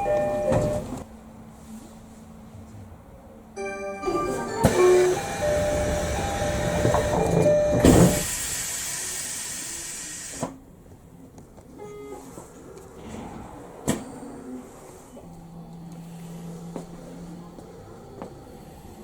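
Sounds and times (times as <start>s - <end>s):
rail noise with whine: 0.0s - 19.0s
air release hiss: 8.1s - 10.5s.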